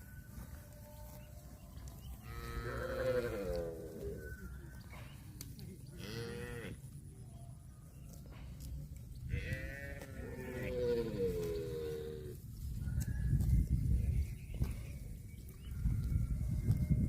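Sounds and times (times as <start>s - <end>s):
cattle mooing: 2.3s - 4.0s, 9.4s - 12.3s.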